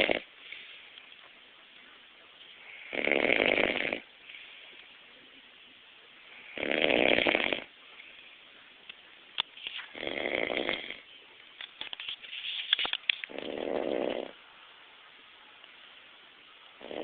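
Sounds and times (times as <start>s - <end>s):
man snoring loudly: 0.0s - 0.3s, 2.8s - 4.0s, 6.4s - 7.7s, 10.0s - 11.0s, 13.3s - 14.3s, 16.8s - 17.0s
quiet breathing: 0.0s - 11.6s.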